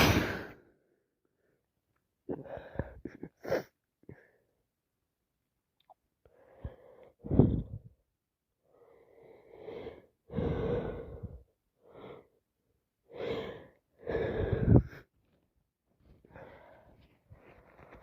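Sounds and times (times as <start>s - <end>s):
woman breathing heavily: 6.3s - 7.8s, 8.7s - 12.3s, 13.1s - 15.2s, 16.1s - 18.0s.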